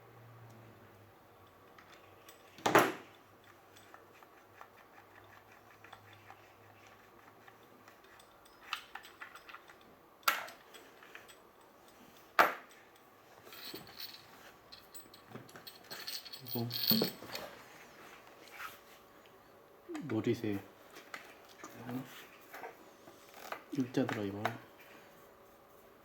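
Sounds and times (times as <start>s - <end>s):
metal parts clinking: 12.5s - 17.5s.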